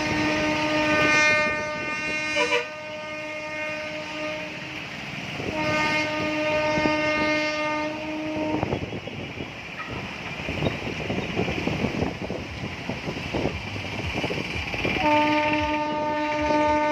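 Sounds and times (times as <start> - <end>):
horn blasts: 0.0 - 10.0, 15.0 - 16.9
steady rushing noise: 8.4 - 16.9.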